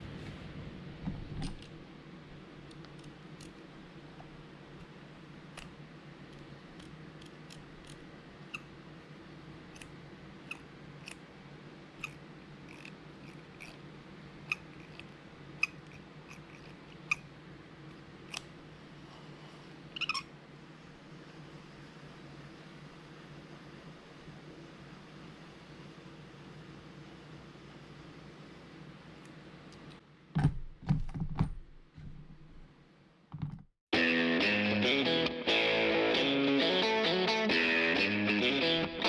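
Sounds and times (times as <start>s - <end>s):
reel lever squeaks and clicks: 20.0s - 20.2s.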